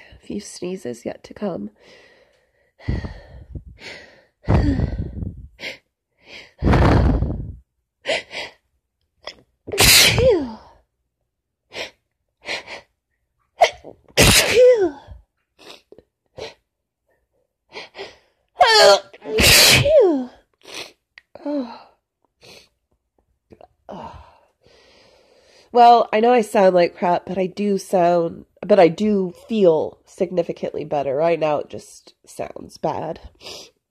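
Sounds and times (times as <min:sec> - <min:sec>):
gasping breaths: 0:01.8 - 0:08.6
woman sneezing: 0:09.7 - 0:10.7, 0:13.6 - 0:15.2, 0:18.6 - 0:20.3.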